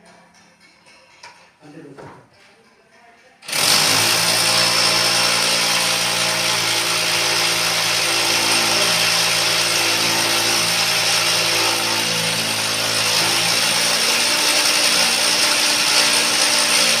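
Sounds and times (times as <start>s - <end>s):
power drill boring into concrete: 3.4s - 17.0s.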